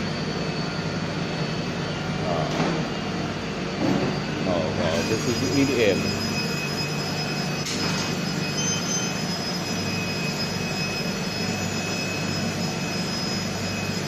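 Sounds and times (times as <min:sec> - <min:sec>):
machine room hum: 0:00.0 - 0:14.0
high-pitched steady tones: 0:04.4 - 0:14.0.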